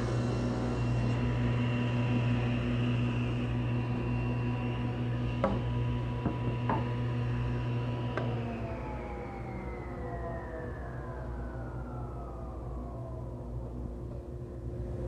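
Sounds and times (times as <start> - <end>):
table saw running: 0.0 - 11.8
knocks of wood being handled: 5.4 - 5.6, 6.2 - 6.9.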